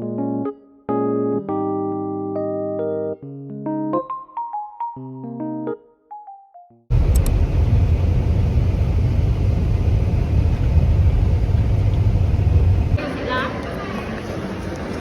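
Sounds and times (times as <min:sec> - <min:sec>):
loud low rumble: 0:06.9 - 0:13.0.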